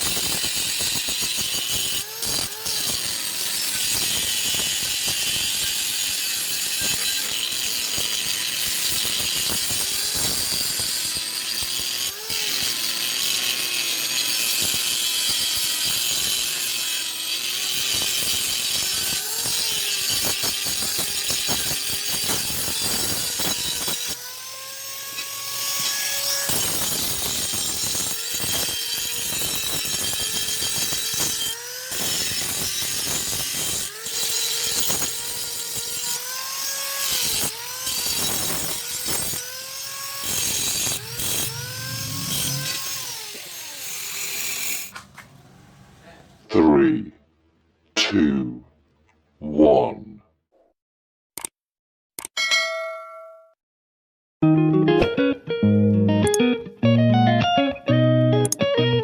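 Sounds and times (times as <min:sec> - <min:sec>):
angle grinder grinding steel: 0:00.0 - 0:45.0.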